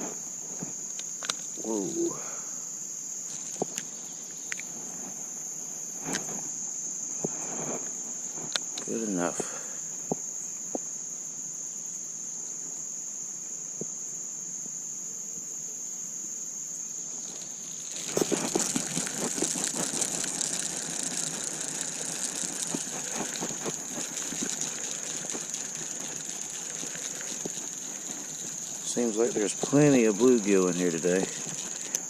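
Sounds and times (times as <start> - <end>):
crickets chirring: 0.0 - 32.0
rattling rustling noise: 17.0 - 32.0.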